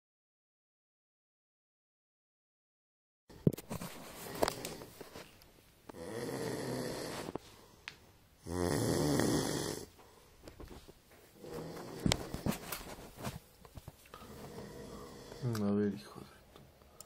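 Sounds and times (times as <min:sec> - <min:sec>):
animal snoring: 0:05.9 - 0:07.4, 0:08.4 - 0:09.9, 0:11.4 - 0:12.6, 0:14.2 - 0:15.6.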